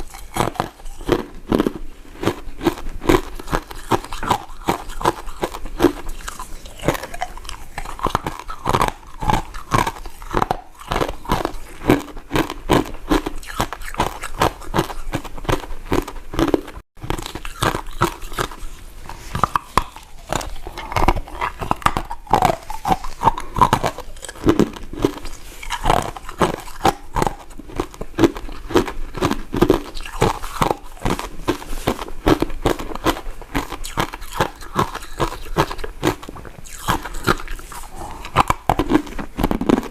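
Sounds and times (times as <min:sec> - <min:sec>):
biting and chewing sweets: 0:00.0 - 0:39.9
wet mouth clicks and smacks: 0:19.4 - 0:29.0.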